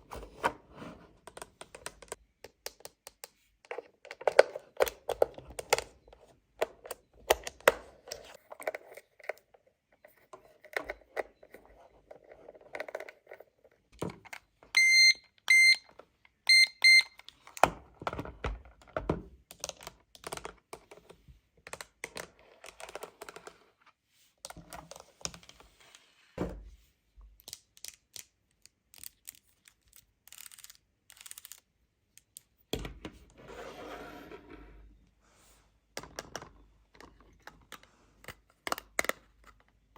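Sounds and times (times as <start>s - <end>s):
plastic clicks and taps: 1.3s - 5.9s.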